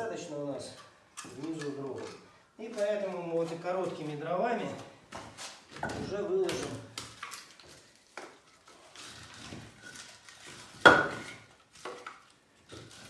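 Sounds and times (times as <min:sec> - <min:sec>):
logs knocking together: 0:10.8 - 0:11.3.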